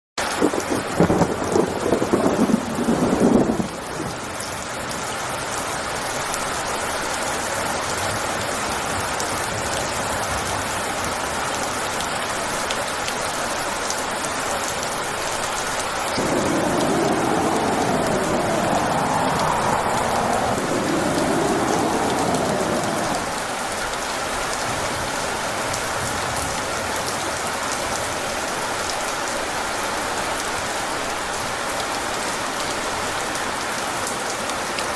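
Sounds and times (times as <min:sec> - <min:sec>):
thunder rumble: 0:00.4 - 0:04.5, 0:16.1 - 0:24.0
heavy rain hissing: 0:16.0 - 0:24.2
wavering rising and falling sweeps: 0:16.2 - 0:23.6.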